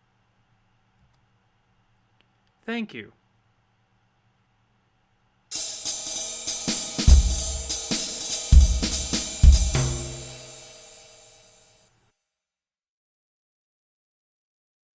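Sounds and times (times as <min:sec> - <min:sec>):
cymbal crash: 0:05.5 - 0:11.4
drums and cymbals music sting: 0:05.5 - 0:11.4
bass drum thumps: 0:06.0 - 0:10.7.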